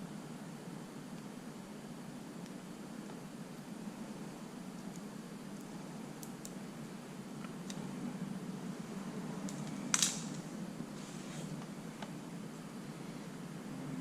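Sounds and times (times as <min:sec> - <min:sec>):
steady low hum: 0:00.0 - 0:14.0
faint clicks of small parts: 0:04.8 - 0:06.6, 0:09.4 - 0:10.5.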